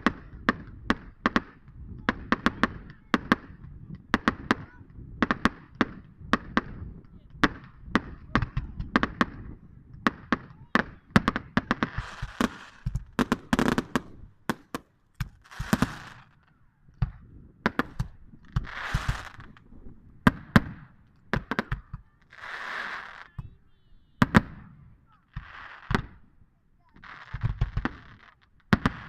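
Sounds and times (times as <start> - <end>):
fireworks bangs: 0.0 - 26.3, 26.9 - 29.0
fireworks hissing bursts: 11.4 - 16.5, 17.9 - 19.7, 20.3 - 26.2.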